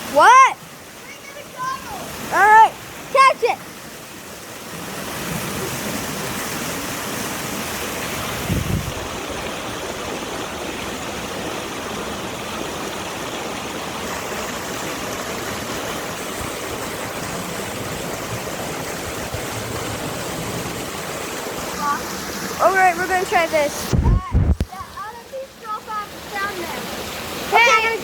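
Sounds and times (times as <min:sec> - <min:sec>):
waterfall rushing: 0:00.0 - 0:28.0
brief low thump: 0:23.9 - 0:24.7.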